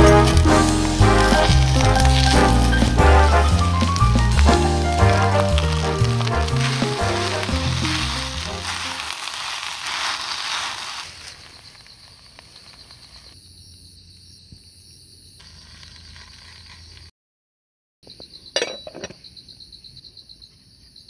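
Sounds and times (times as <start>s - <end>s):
background music: 0.0s - 9.0s
fried rice sizzling in a pot: 0.0s - 13.4s.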